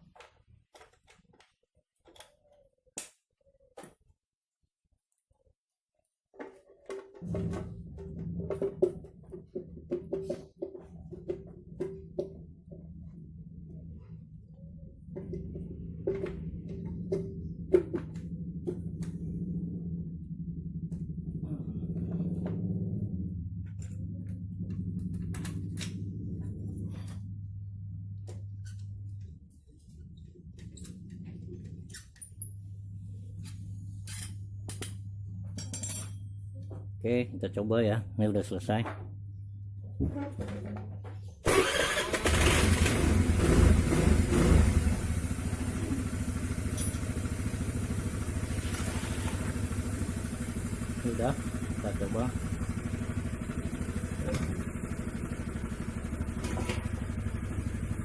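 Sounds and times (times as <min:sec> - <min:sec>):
scooter engine revving and idling: 0:07.2 - 0:28.0, 0:41.5 - 0:58.0
steady low hum: 0:07.2 - 0:41.4, 0:45.2 - 0:58.0
metal tools clicking and clinking: 0:35.6 - 0:36.3.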